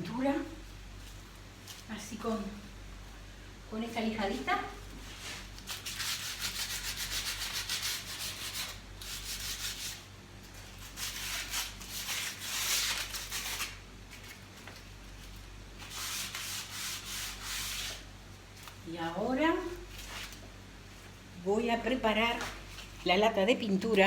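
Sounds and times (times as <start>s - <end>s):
sandpaper rubbing by hand: 5.2s - 10.0s, 10.7s - 13.8s, 15.8s - 18.0s.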